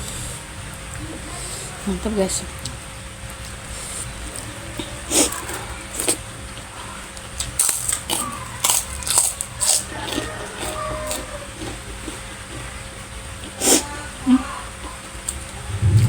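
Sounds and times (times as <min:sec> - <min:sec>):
person chewing: 0:07.5 - 0:12.2.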